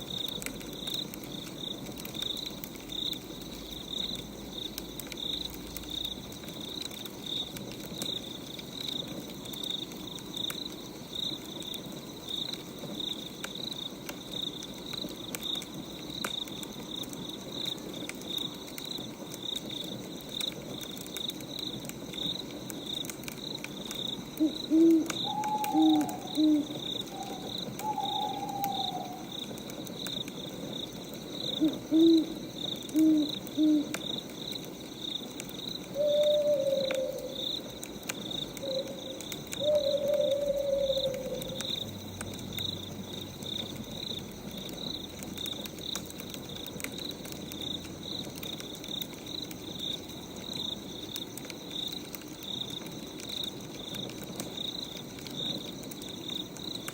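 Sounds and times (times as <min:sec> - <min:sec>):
crickets chirping: 0:00.0 - 0:56.9
owl hooting: 0:24.4 - 0:29.3, 0:31.6 - 0:34.0, 0:36.0 - 0:37.4, 0:38.6 - 0:41.8.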